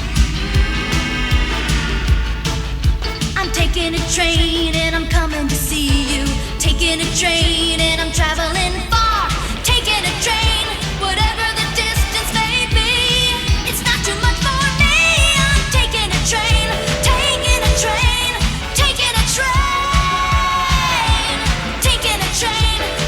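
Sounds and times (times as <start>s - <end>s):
pop-rock song with lead vocal: 0.0s - 23.0s
steady drum beat: 0.0s - 23.0s.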